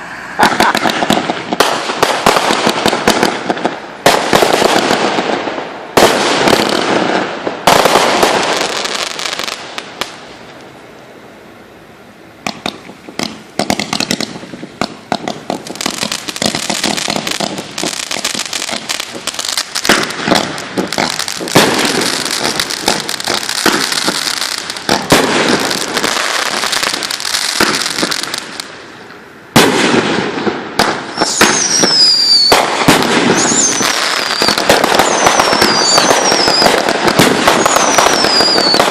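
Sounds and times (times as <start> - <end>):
fireworks crackling: 0.0 - 38.9
falling firework whistles: 12.6 - 38.9.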